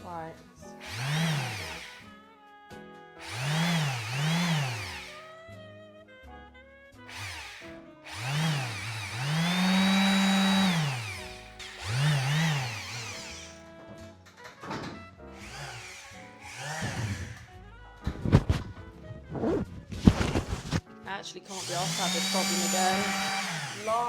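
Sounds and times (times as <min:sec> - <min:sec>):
electric sander motor: 0:00.8 - 0:02.2, 0:03.2 - 0:05.2, 0:07.1 - 0:13.6, 0:15.4 - 0:17.6, 0:21.5 - 0:24.0.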